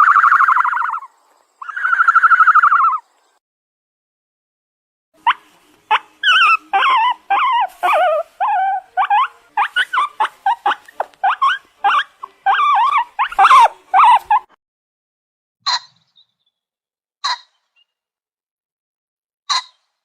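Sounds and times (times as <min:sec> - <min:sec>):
animal whining and yelping: 0:00.0 - 0:03.0, 0:05.2 - 0:14.6.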